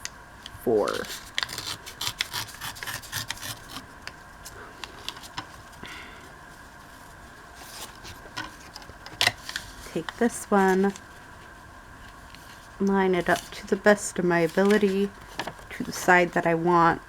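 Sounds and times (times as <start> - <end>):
paper handled on a tabletop: 6.5 - 16.0.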